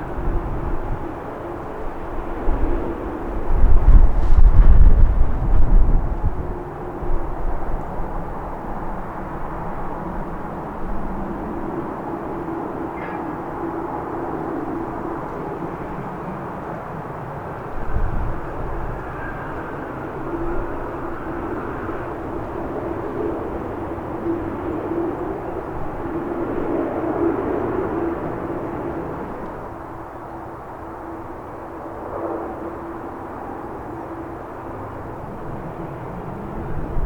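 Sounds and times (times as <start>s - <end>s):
wind on microphone: 0.0s - 30.4s, 31.0s - 37.0s
jet engines running: 0.0s - 37.0s.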